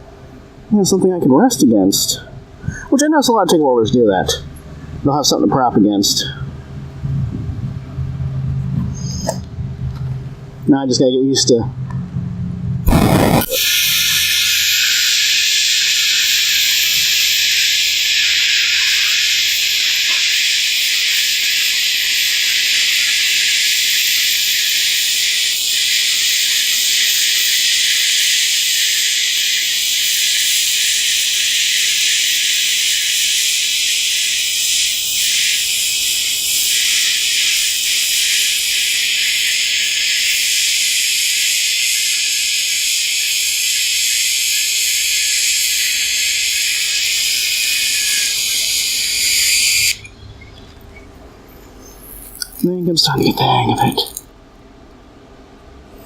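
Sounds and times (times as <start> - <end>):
welding arc hissing: 12.8 - 50.4, 51.8 - 54.3.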